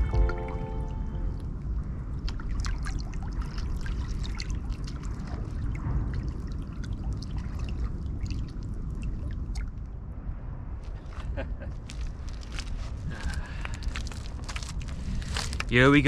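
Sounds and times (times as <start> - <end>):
steady low rumble: 0.0 - 16.0
water trickling and lapping: 2.1 - 10.0, 10.8 - 15.8.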